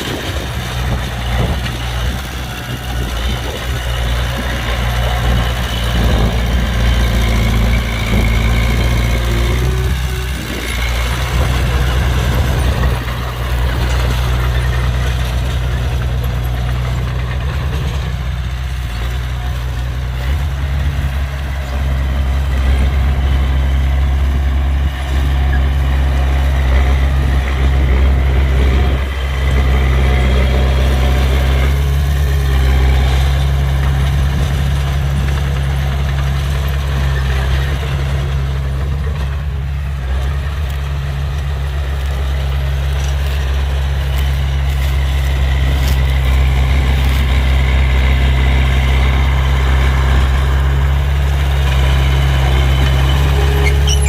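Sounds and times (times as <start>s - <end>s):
large engine idling: 0.0s - 54.0s.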